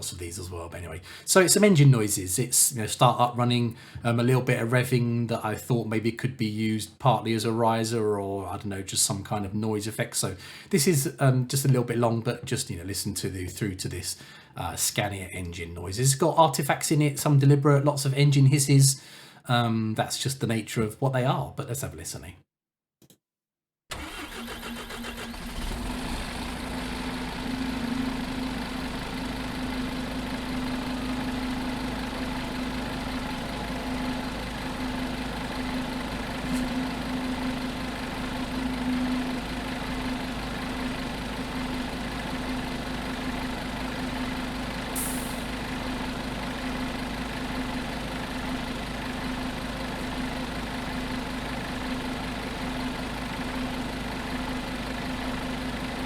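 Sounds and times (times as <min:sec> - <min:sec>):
bus engine idling: 0:23.9 - 0:56.0
short high hiss: 0:45.0 - 0:45.5.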